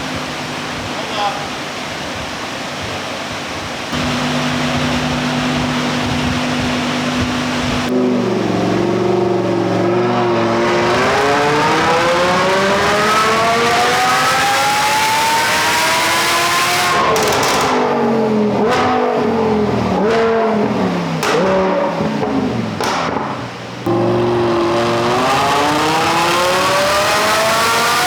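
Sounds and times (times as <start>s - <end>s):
exhaust pops and blips: 3.9s - 8.2s, 16.9s - 26.7s
car engine revving at full throttle: 3.9s - 28.0s.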